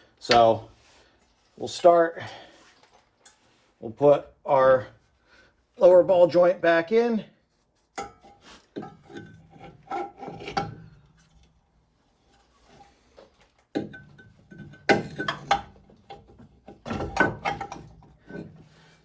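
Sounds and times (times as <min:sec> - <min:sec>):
metal parts knocking and scraping: 0:13.8 - 0:19.0.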